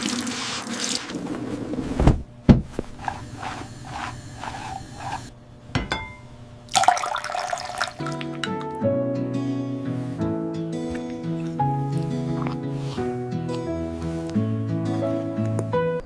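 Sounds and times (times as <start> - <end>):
sharp thumps: 1.4 - 6.2
water running and splashing: 6.7 - 8.3
music: 7.9 - 16.0.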